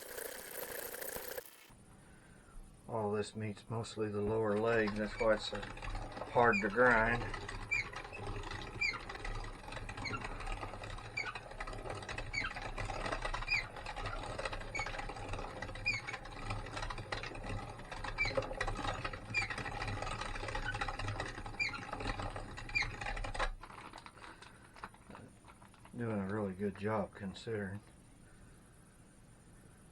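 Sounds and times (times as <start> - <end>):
electric meat grinder running: 0.0 - 1.7.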